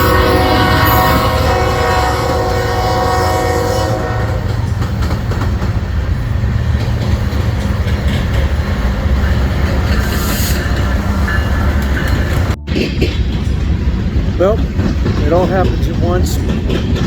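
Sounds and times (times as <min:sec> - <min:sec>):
train horn: 0:00.0 - 0:04.9
train rumbling past: 0:00.0 - 0:17.0
wheels clattering over rail joints: 0:00.0 - 0:17.0.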